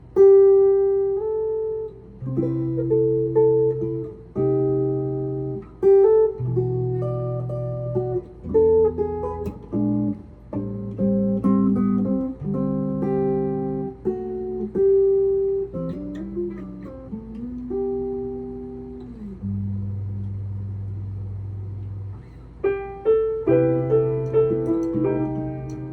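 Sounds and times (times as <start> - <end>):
plucked string instrument melody: 22.7 - 25.9.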